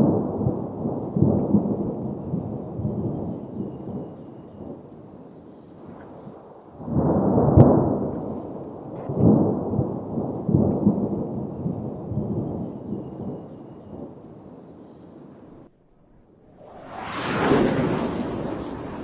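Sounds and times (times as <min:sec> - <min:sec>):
thunder rumbling: 0:00.0 - 0:15.7, 0:16.4 - 0:19.0
sharp thunder crack: 0:05.8 - 0:14.1, 0:16.6 - 0:19.0.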